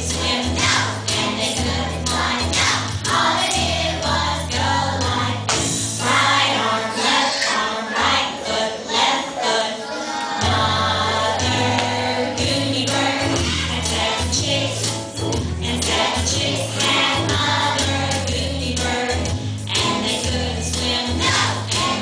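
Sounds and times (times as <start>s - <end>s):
choir singing: 0.0s - 5.4s, 6.0s - 15.0s, 15.6s - 22.0s
sustained bass notes: 10.4s - 22.0s.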